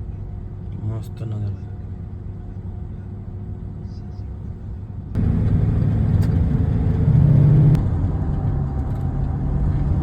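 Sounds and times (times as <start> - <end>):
car engine and tyre rumble: 0.0 - 10.0.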